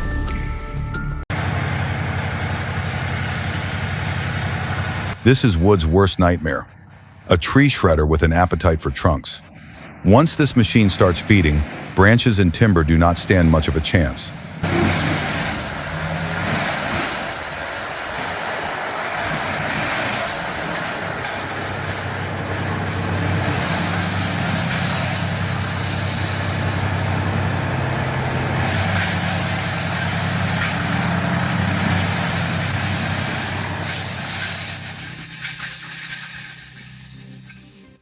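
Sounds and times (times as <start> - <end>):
shredder engine drone: 1.3 - 6.0, 9.5 - 37.6
timber being shredded: 13.6 - 37.7.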